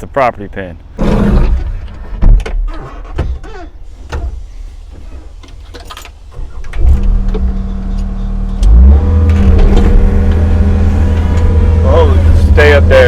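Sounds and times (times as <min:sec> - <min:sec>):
hydraulics working: 0:01.0 - 0:13.0
excavator diesel engine: 0:06.3 - 0:13.0.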